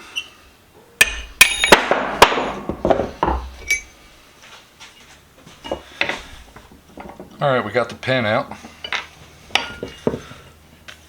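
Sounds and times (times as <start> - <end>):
hammer striking metal: 1.0 - 2.7
light metal knocks and taps: 5.6 - 8.0.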